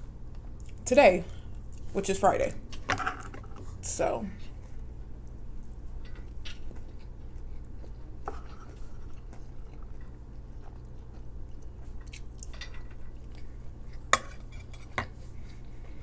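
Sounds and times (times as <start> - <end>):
steady low hum: 0.0 - 16.0
person chewing food: 0.3 - 0.8, 4.6 - 16.0.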